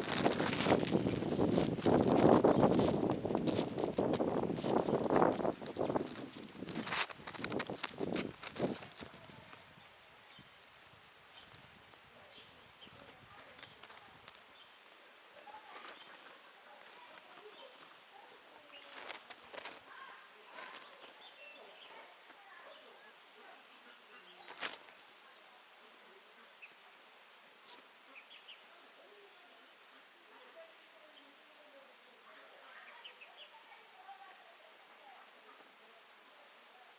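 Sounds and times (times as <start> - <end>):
insect buzzing trill: 0.0 - 9.6
wind rumble on microphone: 0.0 - 10.6
faint ticks and rustles: 0.0 - 22.8, 23.8 - 28.5.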